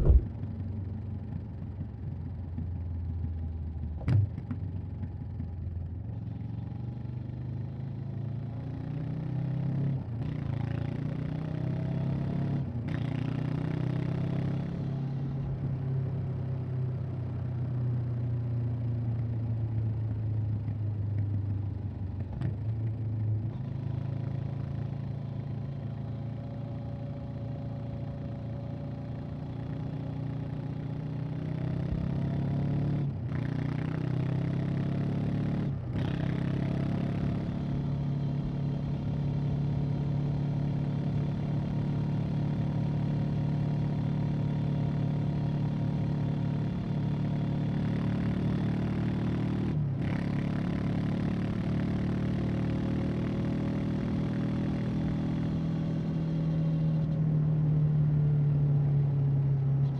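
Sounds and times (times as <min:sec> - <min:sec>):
wind rush: 0:00.0 - 0:00.3
motorcycle engine and exhaust: 0:00.0 - 0:59.9.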